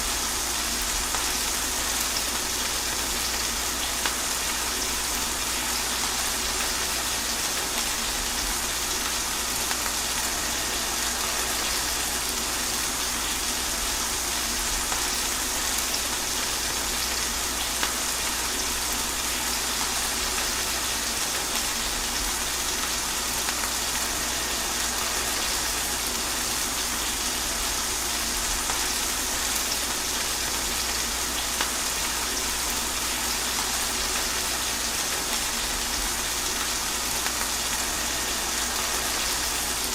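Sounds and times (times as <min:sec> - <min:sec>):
rain falling through trees: 0:00.0 - 0:39.9.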